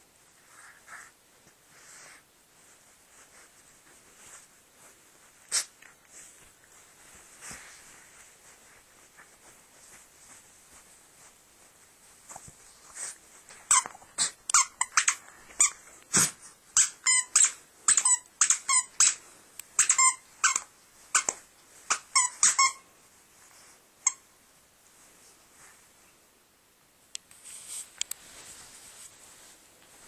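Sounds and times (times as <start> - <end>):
squeaky dog toy squeaking: 13.7 - 15.8, 16.8 - 19.2, 19.8 - 22.8.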